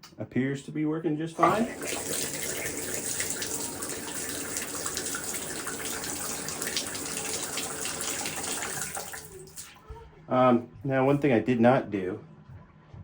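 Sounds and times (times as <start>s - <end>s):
shower water running: 1.4s - 9.8s.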